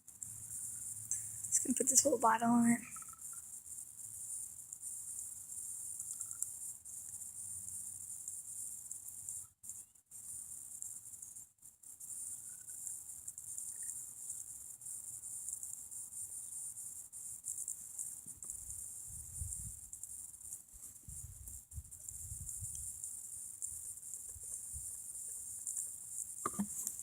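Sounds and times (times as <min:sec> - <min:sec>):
crickets trilling: 0:00.1 - 0:27.0.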